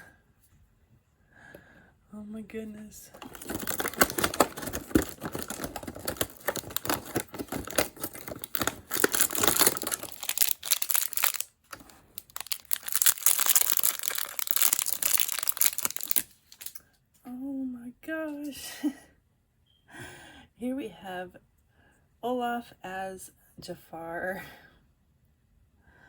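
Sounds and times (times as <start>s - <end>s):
plastic bag crinkling and tearing: 3.1s - 16.8s.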